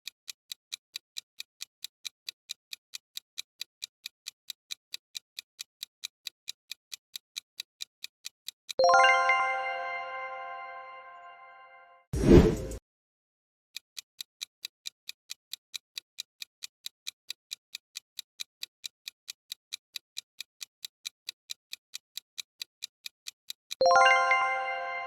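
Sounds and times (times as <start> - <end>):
countdown timer ticking: 8.8 - 10.8, 23.8 - 25.0.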